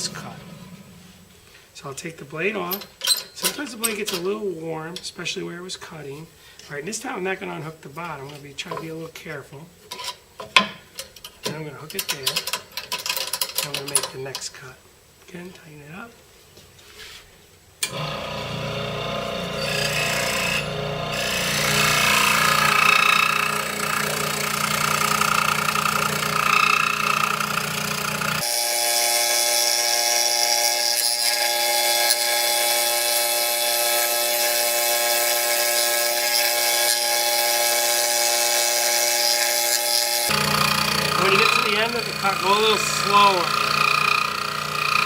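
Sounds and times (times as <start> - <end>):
scroll saw cutting wood: 0.0 - 1.0, 17.8 - 45.0.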